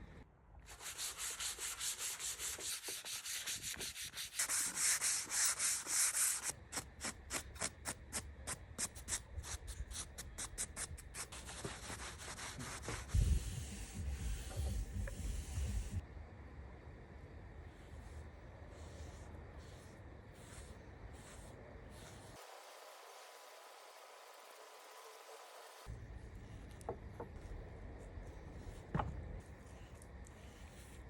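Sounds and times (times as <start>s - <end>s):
wood being sanded by hand: 0.7s - 6.5s.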